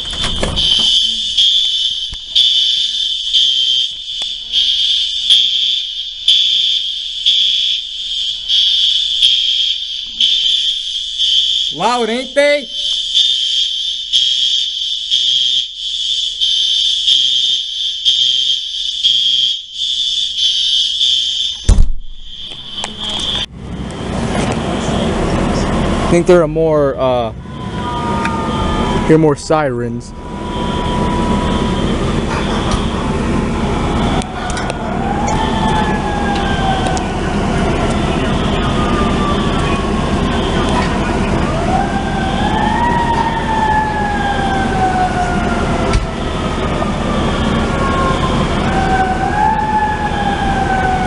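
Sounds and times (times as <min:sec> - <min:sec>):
fire alarm pulsing tone: 0:00.0 - 0:24.2, 0:26.1 - 0:51.0
emergency siren wailing: 0:00.0 - 0:51.0
heavy thump: 0:21.7 - 0:22.7
steady low rumble: 0:21.7 - 0:49.2.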